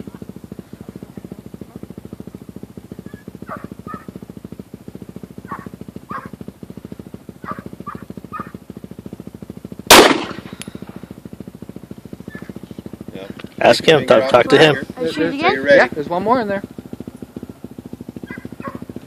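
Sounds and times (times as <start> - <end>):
steady low throb: 0.0 - 19.0
dog barking: 3.1 - 4.1, 5.4 - 6.4, 7.4 - 8.6, 18.2 - 18.8
pistol shot: 9.9 - 10.7.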